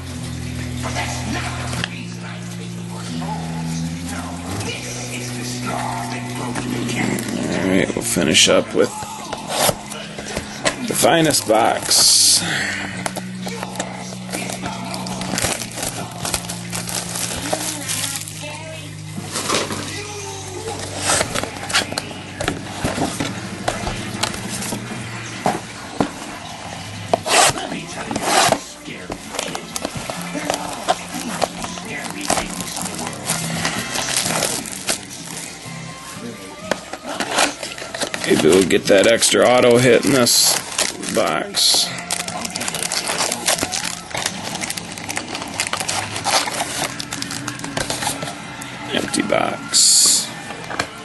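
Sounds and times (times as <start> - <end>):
plastic and foil wrapping crinkling: 4.8 - 51.0
cardboard box rustling and scraping: 13.1 - 18.5, 20.8 - 26.4, 27.1 - 35.0, 42.0 - 48.4.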